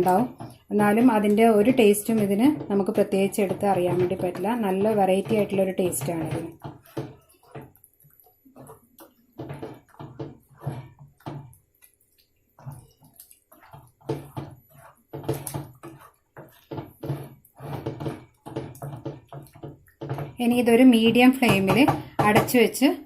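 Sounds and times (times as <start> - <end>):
spatula scraping pan: 0.0 - 22.8.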